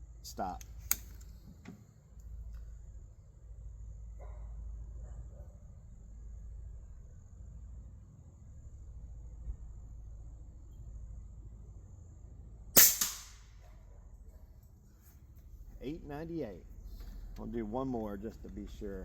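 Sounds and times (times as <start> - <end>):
crickets chirping: 0.0 - 19.0
air rifle shot crack: 12.8 - 13.6.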